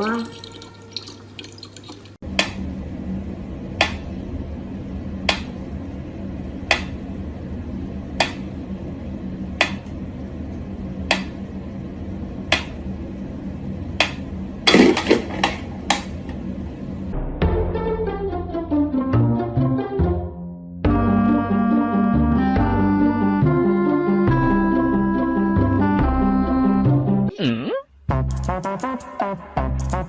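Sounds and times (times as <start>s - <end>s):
steady low hum: 2.2s - 17.5s.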